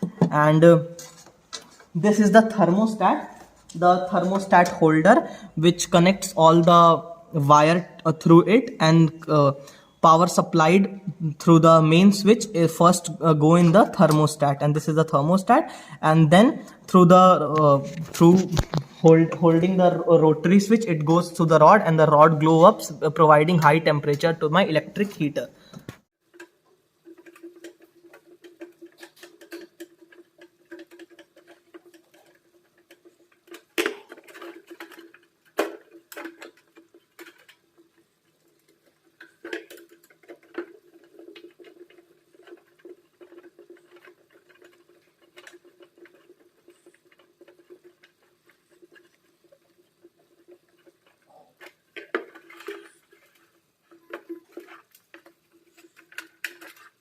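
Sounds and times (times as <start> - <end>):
clicks and scrapes of heater parts: 0.0 - 2.6, 16.5 - 21.4, 22.4 - 57.0.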